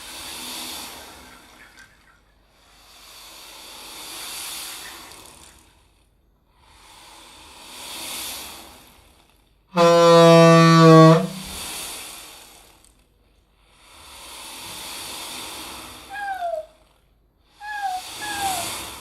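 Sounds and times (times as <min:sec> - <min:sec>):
mouth-made horn-like note: 0:09.8 - 0:11.6, 0:17.6 - 0:18.8
mouth-made breathy whooshes: 0:17.6 - 0:19.0.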